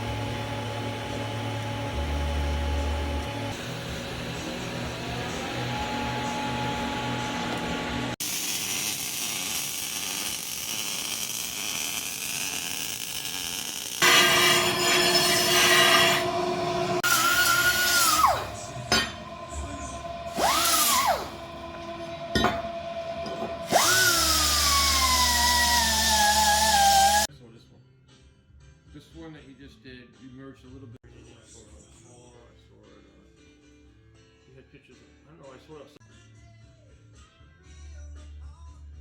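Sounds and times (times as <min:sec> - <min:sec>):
power tool motor whirring: 0:00.0 - 0:27.3.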